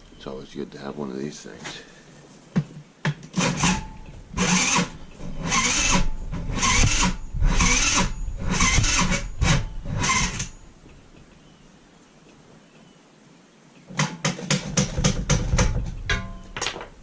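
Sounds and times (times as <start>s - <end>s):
person speaking: 0.0s - 2.1s
scooter engine cranking: 3.4s - 10.5s.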